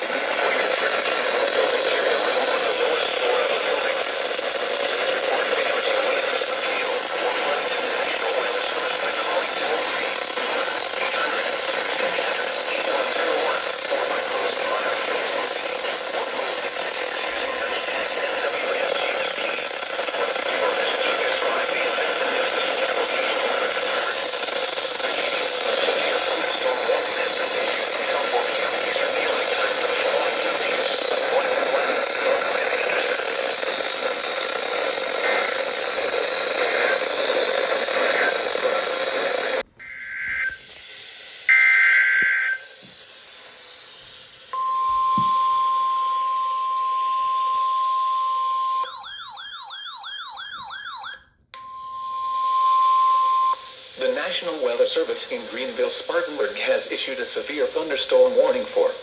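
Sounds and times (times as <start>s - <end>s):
radio static hiss: 0.0s - 46.5s, 53.3s - 59.0s.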